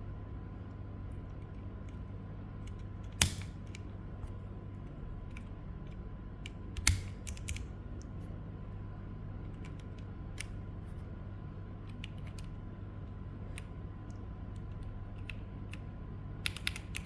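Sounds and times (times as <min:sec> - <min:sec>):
keyboard switch clicks: 0:02.7 - 0:03.9, 0:05.3 - 0:08.1, 0:16.4 - 0:17.0.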